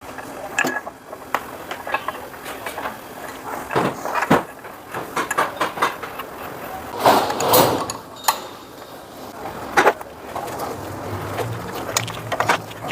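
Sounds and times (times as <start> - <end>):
metal clanks and knocks: 1.7 - 6.3, 6.9 - 9.1.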